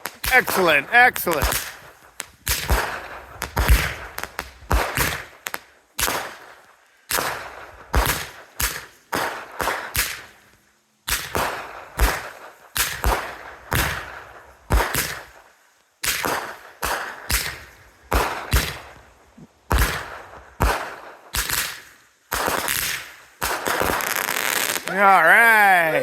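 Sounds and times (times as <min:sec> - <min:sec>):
fireworks bangs: 0:00.0 - 0:10.2, 0:16.0 - 0:26.0.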